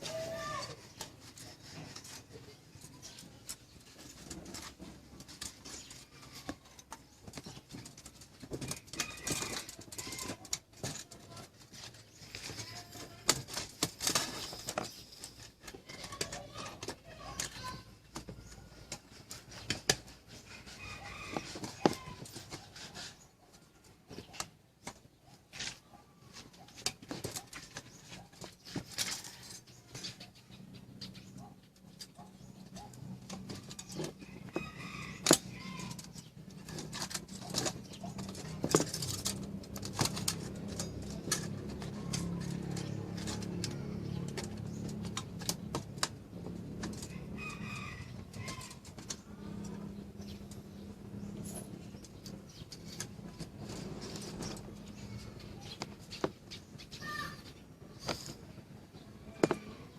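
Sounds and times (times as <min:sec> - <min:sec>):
chickens: 0:00.0 - 0:50.8
birds calling: 0:00.0 - 0:59.9
sharp clicks and knocks: 0:31.0 - 0:47.4.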